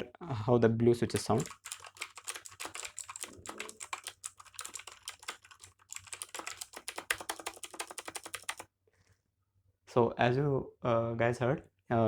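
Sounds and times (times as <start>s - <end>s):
mechanical keyboard clicks: 1.1s - 8.6s.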